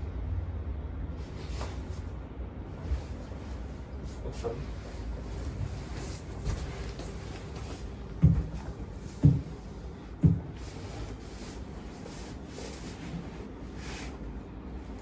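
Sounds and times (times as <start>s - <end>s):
dull thumps: 8.2s - 10.7s.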